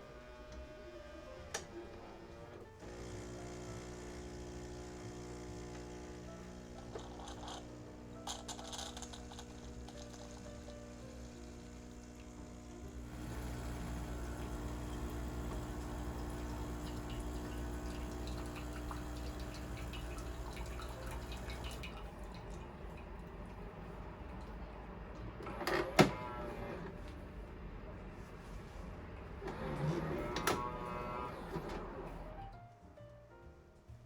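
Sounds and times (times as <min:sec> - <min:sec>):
soft background music: 0:00.0 - 0:34.0
water running: 0:00.1 - 0:24.6.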